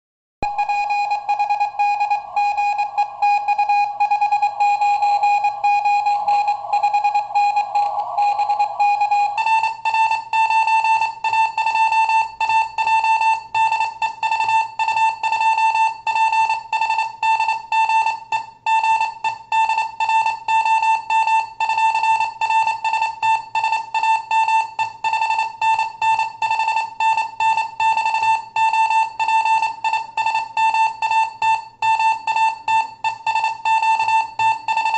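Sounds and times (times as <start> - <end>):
morse code beeps: 0.4 - 16.5.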